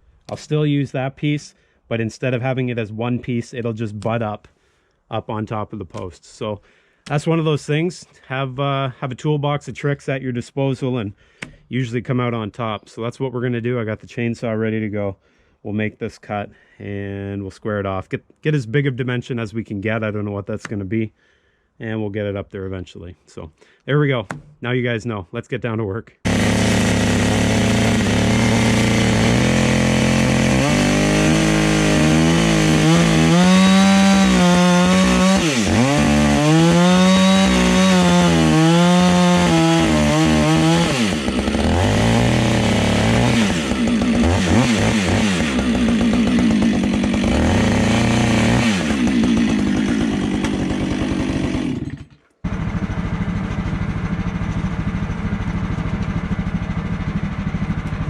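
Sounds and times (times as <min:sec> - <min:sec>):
chainsaw cutting log: 0:26.3 - 0:53.9
steady engine hum: 0:52.5 - 0:58.0.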